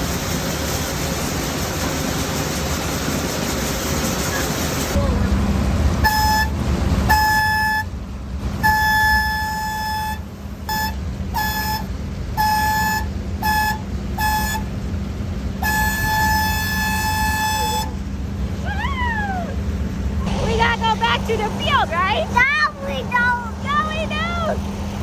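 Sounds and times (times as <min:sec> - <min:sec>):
engine running: 0:00.0 - 0:25.0
horn honking: 0:05.9 - 0:14.8, 0:15.5 - 0:18.0.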